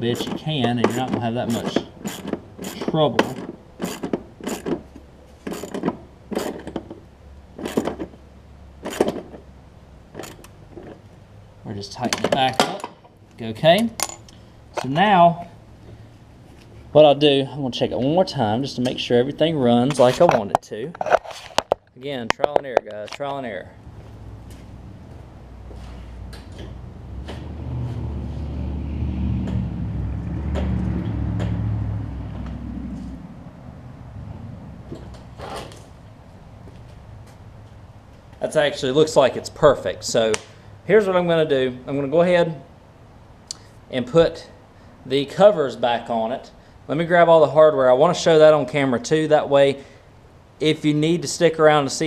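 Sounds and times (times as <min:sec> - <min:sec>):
lawn mower engine running: 0:00.0 - 0:08.2, 0:08.8 - 0:11.2
ratcheting metal clicks: 0:00.1 - 0:04.8.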